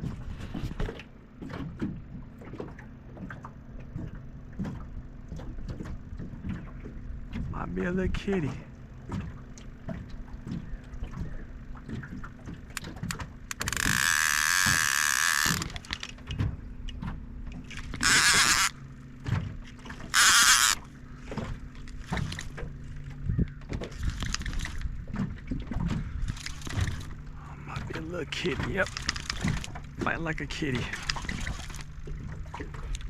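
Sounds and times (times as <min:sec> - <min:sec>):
low steady hum: 0:00.0 - 0:33.0
fishing reel clicks and knocks: 0:12.7 - 0:16.4, 0:17.7 - 0:18.8, 0:20.0 - 0:21.0, 0:23.4 - 0:24.9, 0:28.4 - 0:29.9, 0:30.6 - 0:31.9.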